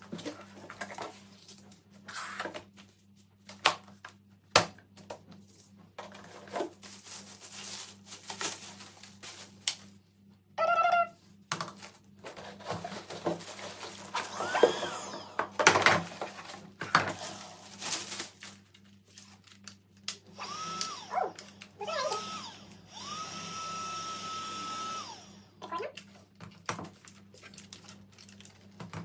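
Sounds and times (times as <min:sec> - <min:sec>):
vacuum cleaner motor whine: 0:12.4 - 0:18.1, 0:20.3 - 0:25.6.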